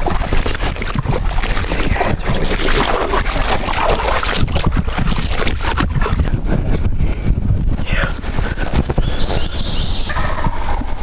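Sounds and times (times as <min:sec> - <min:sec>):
wind rumble on microphone: 0:00.0 - 0:11.0.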